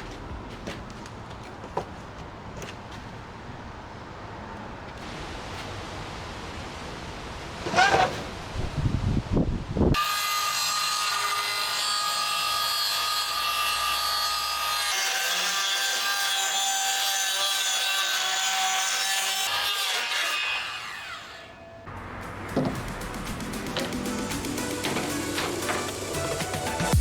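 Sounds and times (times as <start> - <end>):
power saw ripping plywood: 7.6 - 8.4.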